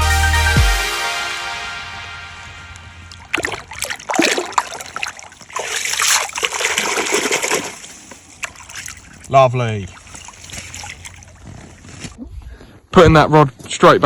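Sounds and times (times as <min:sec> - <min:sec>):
lake water splashing: 0:02.9 - 0:12.2.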